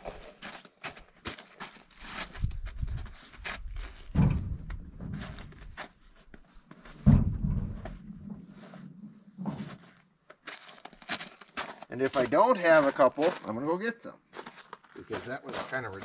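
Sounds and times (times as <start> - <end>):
heavy thunks: 4.1 - 5.6, 7.0 - 8.5.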